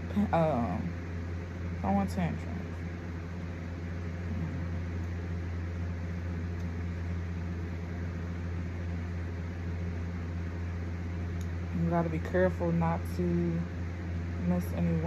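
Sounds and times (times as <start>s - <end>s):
small motor humming: 0.9s - 11.6s.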